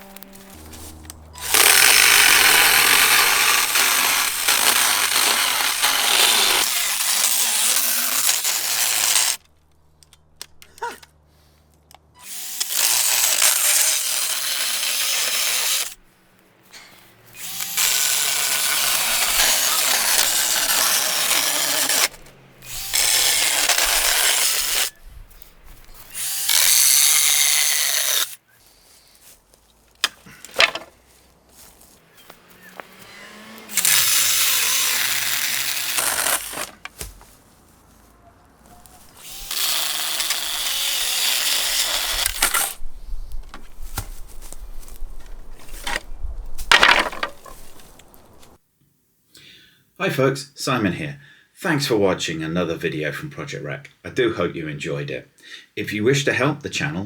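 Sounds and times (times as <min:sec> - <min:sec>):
chainsaw cutting wood: 0:00.0 - 0:09.5, 0:12.2 - 0:16.0, 0:17.3 - 0:25.0, 0:26.0 - 0:28.4, 0:30.0 - 0:30.9, 0:32.2 - 0:37.3, 0:38.9 - 0:42.8, 0:44.8 - 0:48.6.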